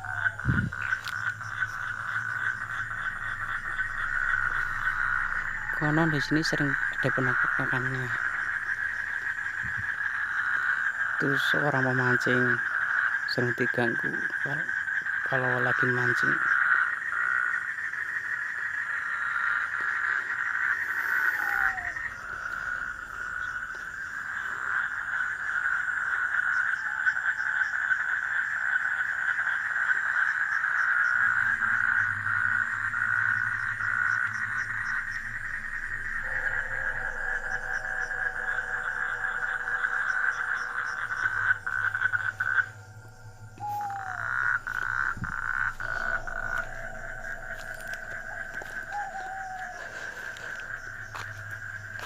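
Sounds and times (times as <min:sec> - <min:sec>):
low hum: 0:00.0 - 0:11.0, 0:31.2 - 0:52.0
chorus of frogs calling: 0:00.0 - 0:52.0.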